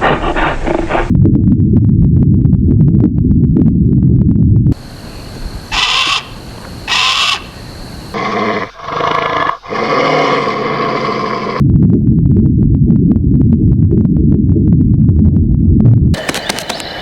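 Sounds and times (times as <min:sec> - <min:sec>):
animal calls: 0:04.8 - 0:11.6.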